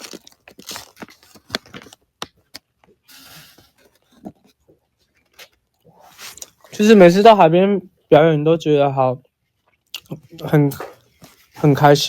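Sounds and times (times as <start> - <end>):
soft rustle: 10.8 - 12.0.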